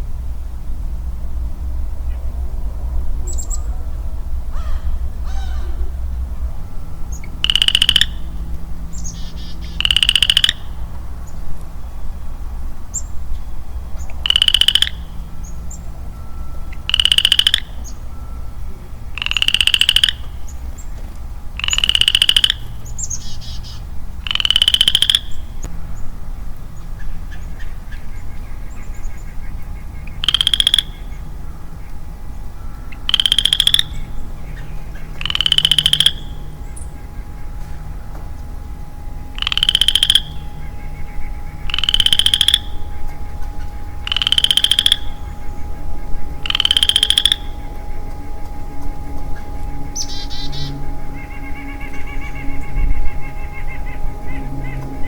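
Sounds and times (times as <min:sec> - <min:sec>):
frog trilling: 0:07.0 - 0:11.4, 0:14.0 - 0:15.9, 0:16.7 - 0:18.3, 0:19.1 - 0:25.7, 0:27.0 - 0:55.0.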